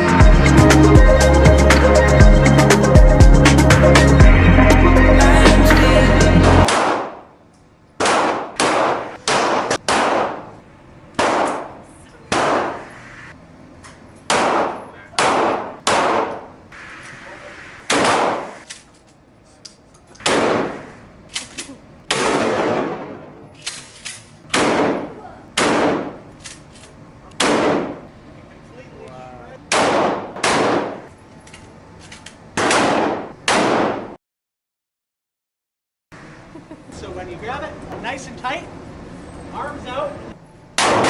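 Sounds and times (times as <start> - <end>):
gunshots with echo: 6.6 - 7.3, 8.0 - 10.5, 11.2 - 12.9, 14.3 - 16.5, 17.8 - 18.6, 20.2 - 21.0, 22.1 - 23.3, 24.5 - 26.2, 29.7 - 31.1, 32.6 - 34.2, 40.8 - 41.0.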